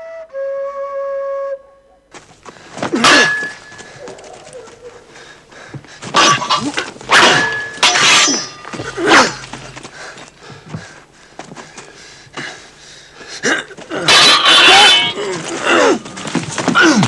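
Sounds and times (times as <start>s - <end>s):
sharp metallic clashes ringing: 3.0s - 4.2s, 6.0s - 9.8s, 14.0s - 15.9s.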